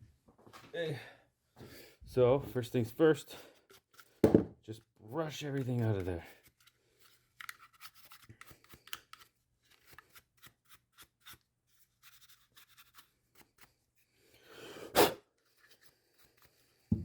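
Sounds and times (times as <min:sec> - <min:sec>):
small brush scratching: 0:09.8 - 0:13.8.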